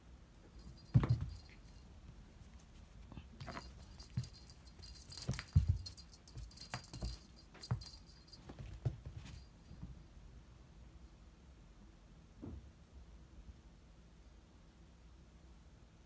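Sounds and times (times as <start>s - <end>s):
light metallic jingling: 0.5s - 9.8s
cat paws thumping on floor: 0.6s - 1.8s, 3.2s - 10.0s.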